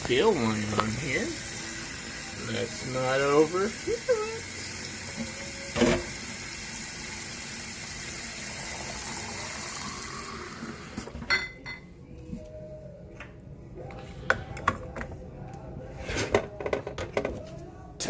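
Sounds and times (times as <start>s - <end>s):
tap water running into tank: 0.0s - 11.2s.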